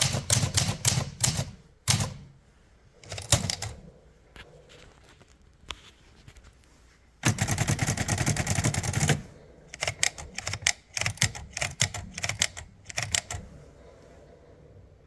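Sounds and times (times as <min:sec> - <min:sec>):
typewriter key strikes: 0:00.0 - 0:02.3, 0:03.0 - 0:03.8, 0:09.8 - 0:13.4
typewriter keys rattling: 0:03.0 - 0:03.8, 0:07.2 - 0:09.2, 0:09.8 - 0:13.4.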